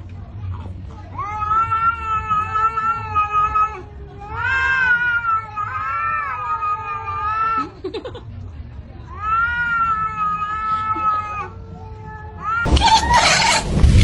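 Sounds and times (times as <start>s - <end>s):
cat yowling: 1.2s - 7.7s, 9.1s - 13.6s.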